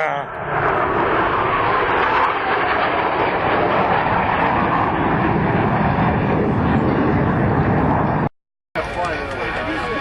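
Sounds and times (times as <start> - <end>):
aircraft engine rushing: 0.0 - 10.0.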